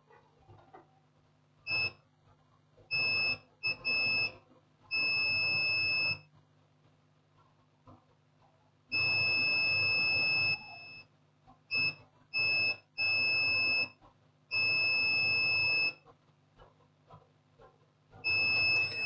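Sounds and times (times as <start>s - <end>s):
multimeter continuity beep: 1.7s - 2.0s, 2.9s - 6.3s, 8.9s - 11.1s, 11.7s - 16.0s, 18.2s - 19.0s.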